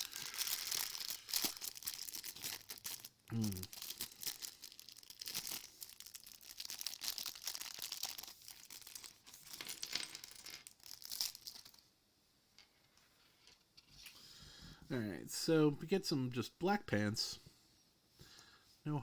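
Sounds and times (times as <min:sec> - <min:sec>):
plastic bag crinkling and tearing: 0:00.0 - 0:11.8.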